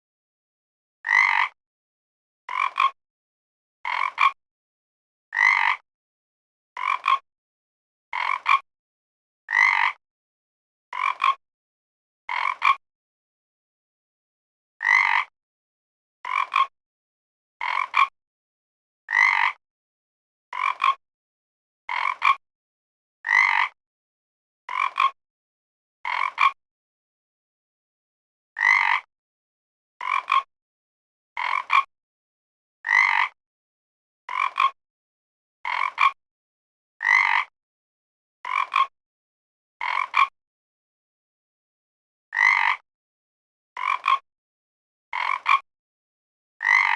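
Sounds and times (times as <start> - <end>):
frog croaking: 1.1 - 1.6, 2.5 - 3.0, 3.9 - 4.4, 5.4 - 5.8, 6.8 - 7.2, 8.2 - 8.6, 9.5 - 10.0, 10.9 - 11.4, 12.3 - 12.8, 14.8 - 15.3, 16.3 - 16.7, 17.6 - 18.1, 19.1 - 19.6, 20.5 - 21.0, 21.9 - 22.4, 23.3 - 23.8, 24.7 - 25.2, 26.0 - 26.5, 28.6 - 29.1, 30.0 - 30.5, 31.4 - 31.8, 32.9 - 33.4, 34.3 - 34.8, 35.6 - 36.1, 37.0 - 37.5, 38.4 - 38.9, 39.8 - 40.3, 42.4 - 42.8, 43.8 - 44.2, 45.2 - 45.6, 46.6 - 46.9.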